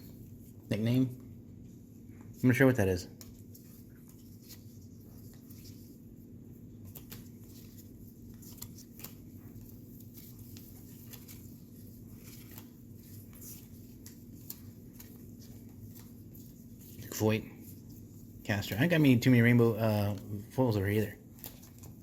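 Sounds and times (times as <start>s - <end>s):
low room hum: 0.0s - 22.0s
cards clicking and sliding: 6.8s - 17.4s.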